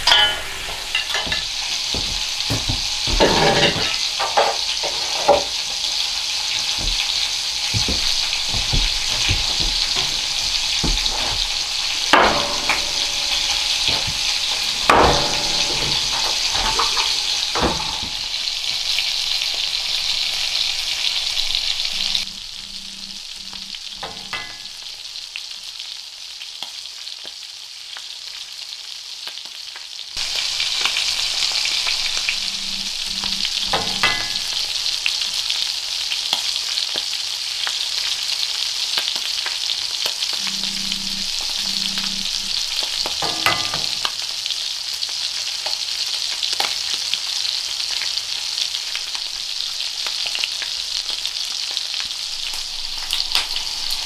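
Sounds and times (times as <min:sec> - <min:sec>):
cooking utensil scraping and clinking: 0:00.0 - 0:19.5, 0:21.9 - 0:24.9, 0:30.2 - 0:35.2, 0:40.4 - 0:44.2
food sizzling in a hot pan: 0:00.0 - 0:54.0.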